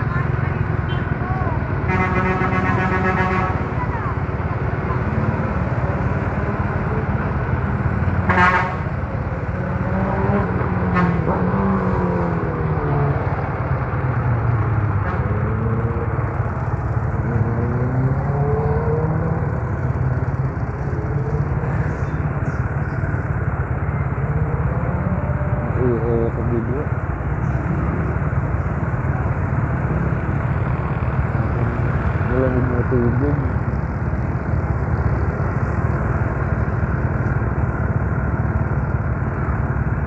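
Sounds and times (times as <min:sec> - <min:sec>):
vehicle horn toots: 0:01.9 - 0:03.8, 0:08.3 - 0:08.9, 0:10.9 - 0:11.3.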